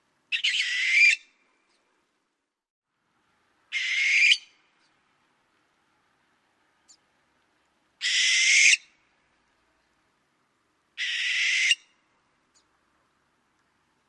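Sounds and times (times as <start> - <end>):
barn owl screeching: 0.3 - 1.2, 3.7 - 4.5, 8.0 - 8.9, 11.0 - 11.9.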